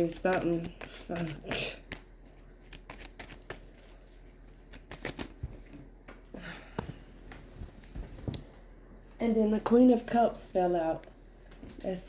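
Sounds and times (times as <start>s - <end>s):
cards being shuffled: 0.0s - 5.9s.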